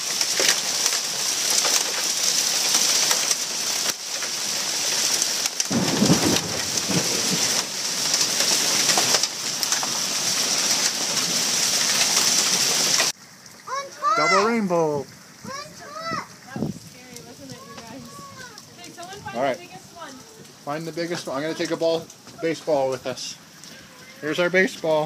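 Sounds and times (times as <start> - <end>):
rain falling: 0.0 - 25.0
drips and ticks: 12.9 - 25.0.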